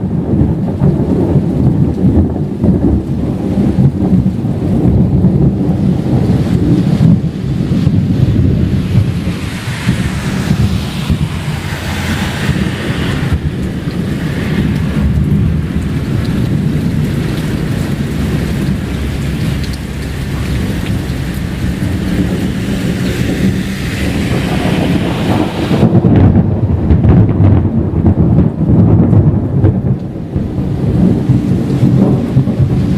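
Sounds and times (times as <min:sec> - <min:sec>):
rain falling: 0:00.0 - 0:32.9
thunder rumbling: 0:00.0 - 0:32.9.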